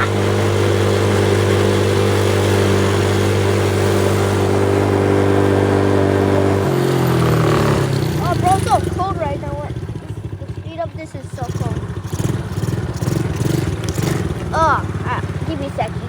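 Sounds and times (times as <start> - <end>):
atv engine running: 0.0 - 16.0.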